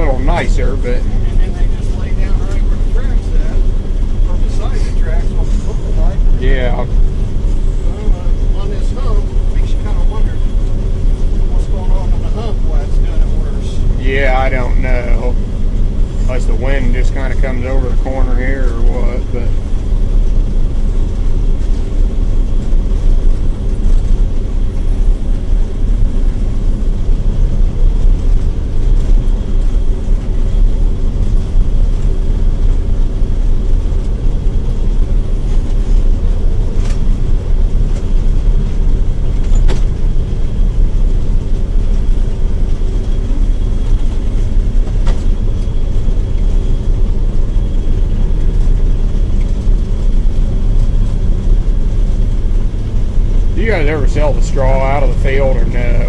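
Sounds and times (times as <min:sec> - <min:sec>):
combine harvester drone: 0:00.0 - 0:56.0
faint high whine: 0:36.6 - 0:56.0.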